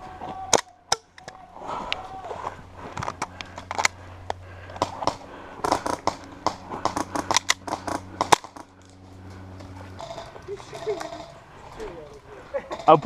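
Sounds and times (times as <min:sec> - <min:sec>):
airsoft guns firing: 0:04.7 - 0:08.7.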